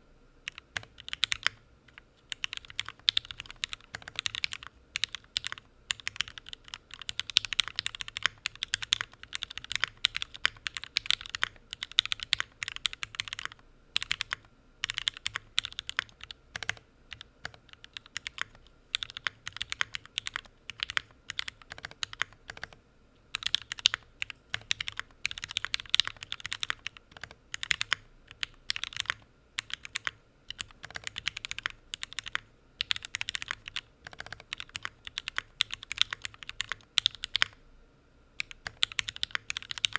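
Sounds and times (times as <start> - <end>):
mechanical keyboard typing: 0.5 - 37.6, 38.4 - 39.9.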